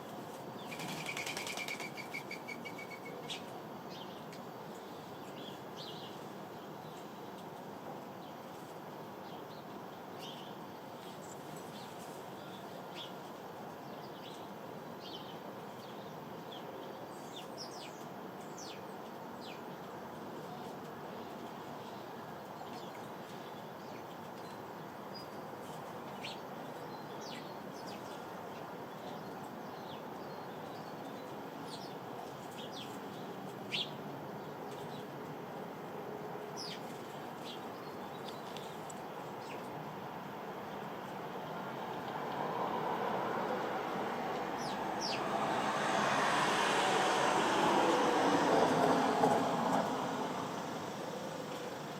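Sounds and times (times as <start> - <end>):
sparrows chirping: 0.6 - 7.2, 9.2 - 13.2, 13.8 - 19.8, 26.1 - 35.2, 36.5 - 39.8, 44.5 - 45.3.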